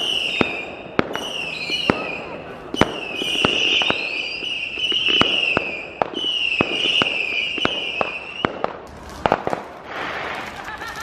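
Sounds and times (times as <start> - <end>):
firework whistle: 0.0 - 8.6
firework cracks and pops: 0.0 - 11.0.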